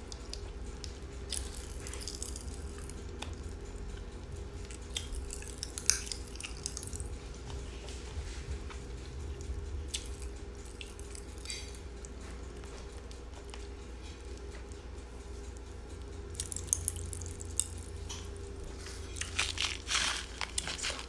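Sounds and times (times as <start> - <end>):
steady low hum: 0.0 - 21.0
popping candy crackling: 0.1 - 3.5, 4.6 - 7.2, 9.9 - 11.8, 16.3 - 21.0.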